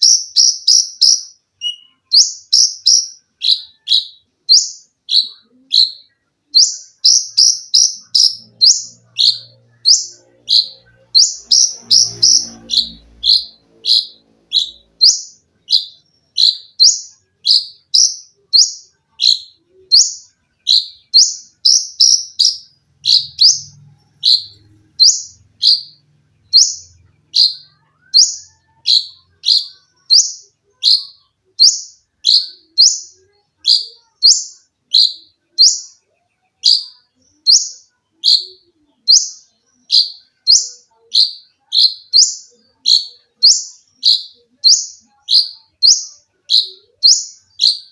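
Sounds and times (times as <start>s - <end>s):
songbird calling shrill notes: 0.0s - 47.9s.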